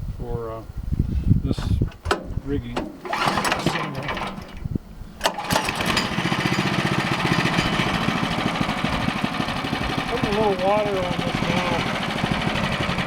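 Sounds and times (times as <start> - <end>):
small gasoline engine starting: 3.0 - 13.0.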